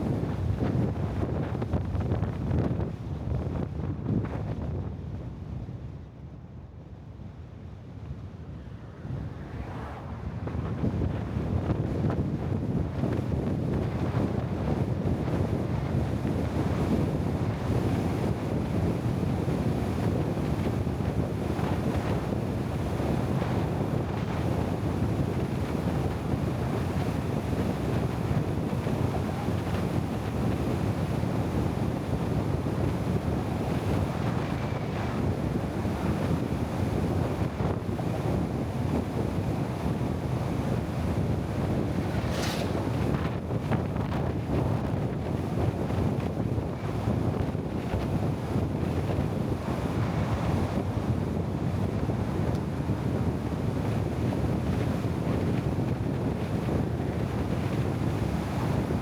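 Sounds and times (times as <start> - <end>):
wind buffeting microphone: 9.6 - 59.0
steady low rumble: 41.3 - 44.5.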